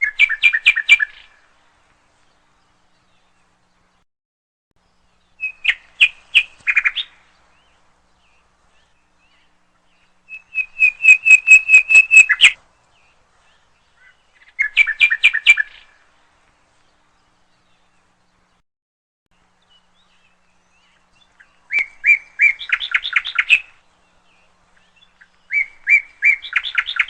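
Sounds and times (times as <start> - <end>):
bird chirping rapidly: 0.0 - 1.4, 5.4 - 12.6, 13.9 - 15.9, 19.8 - 23.8, 24.8 - 27.0.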